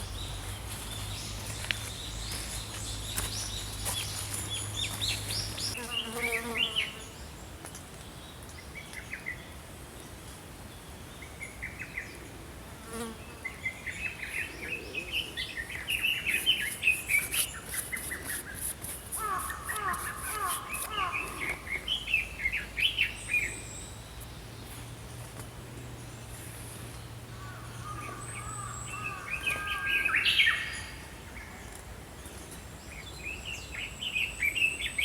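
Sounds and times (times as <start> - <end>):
small birds chirping and trilling: 0.0 - 7.4.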